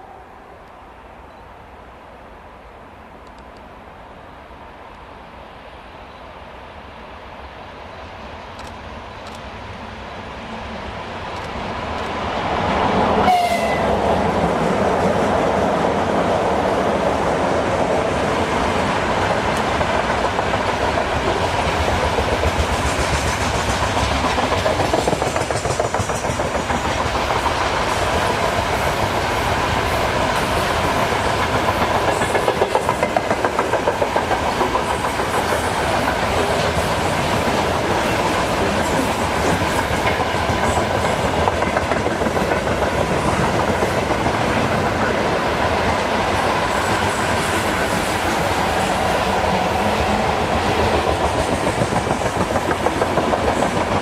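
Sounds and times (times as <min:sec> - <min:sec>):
train wagons rumbling: 0:13.2 - 0:54.0
train wheels clacking over rail joints: 0:19.0 - 0:54.0.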